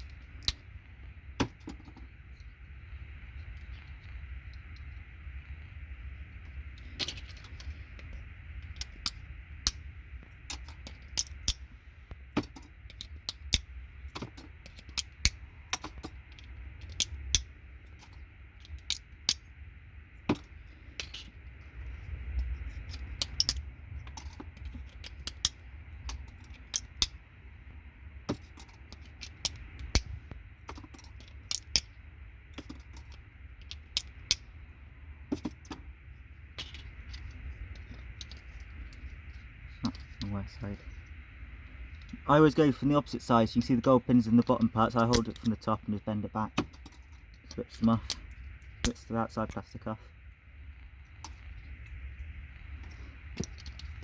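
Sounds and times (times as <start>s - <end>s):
plastic jack housings clicking: 10.5s - 11.6s, 22.4s - 27.2s, 28.3s - 31.9s, 44.3s - 45.7s.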